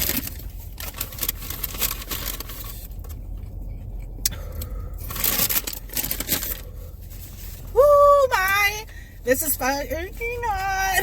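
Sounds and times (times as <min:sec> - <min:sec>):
rustling: 0:00.0 - 0:03.4, 0:05.0 - 0:08.0.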